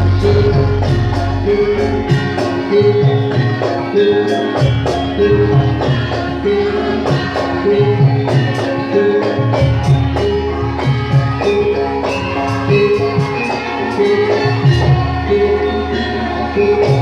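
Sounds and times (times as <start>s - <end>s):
low drone: 0.0s - 3.0s
repeating melodic figure: 0.0s - 4.3s
drums and jingling percussion: 0.0s - 17.0s.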